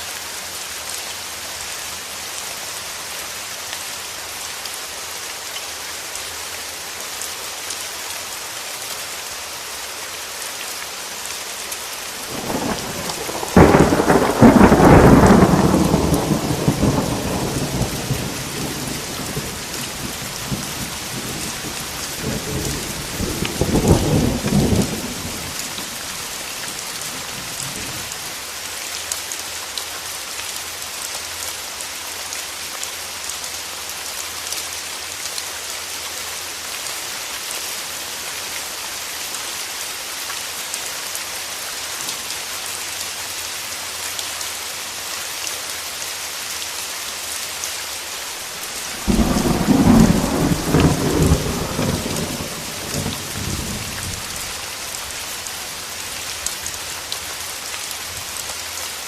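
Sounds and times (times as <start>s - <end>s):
heavy rain: 0.0s - 59.0s
thunder clap rumbling: 12.3s - 26.3s, 48.7s - 54.6s.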